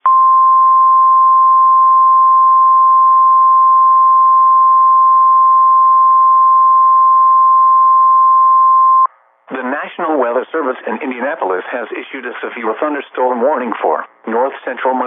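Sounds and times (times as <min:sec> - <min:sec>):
steady loud warning beep: 0:00.0 - 0:09.1
faint radio hiss: 0:09.1 - 0:15.0.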